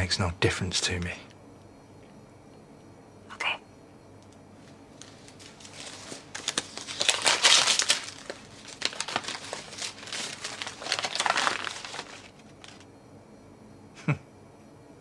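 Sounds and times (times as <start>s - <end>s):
paper crinkling and rustling: 4.9s - 12.9s
paper envelope tearing: 5.0s - 12.8s.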